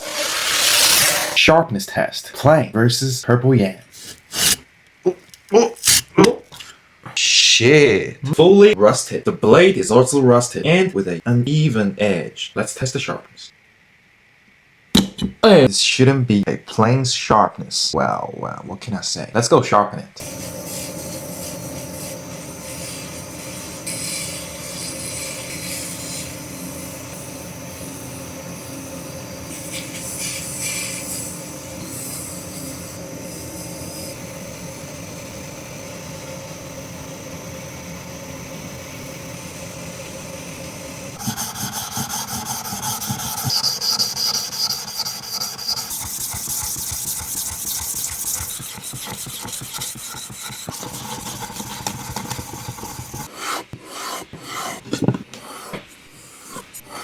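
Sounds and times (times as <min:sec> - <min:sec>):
blade scraping on abrasive: 0:00.0 - 0:01.4, 0:04.0 - 0:04.6, 0:41.2 - 0:54.8
steady hum: 0:20.2 - 0:53.3.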